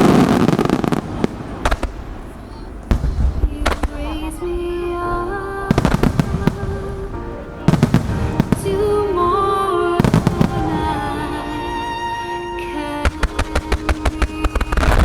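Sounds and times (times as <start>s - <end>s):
fireworks shells bursting: 0.0s - 4.6s, 5.6s - 15.0s.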